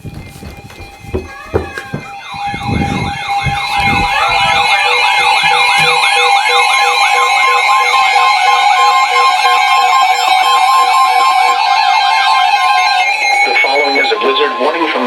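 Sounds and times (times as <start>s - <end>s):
low knocks: 0.0s - 6.4s
siren-like warbling alarm: 0.0s - 15.0s.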